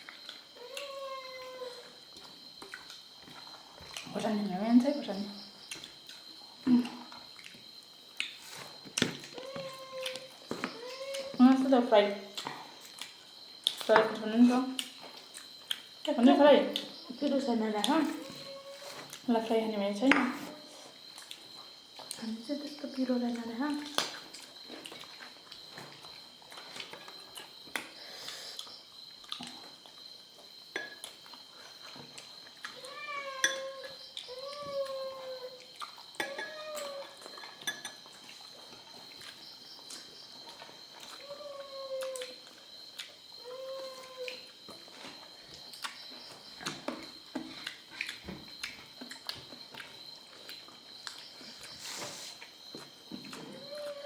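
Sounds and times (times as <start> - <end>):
chewing and mouth smacks: 28.6 - 30.0, 35.6 - 36.2, 42.0 - 43.2, 45.6 - 46.8, 47.5 - 51.8
cutlery clinking on a plate: 33.4 - 33.7, 36.2 - 36.7, 37.3 - 38.1.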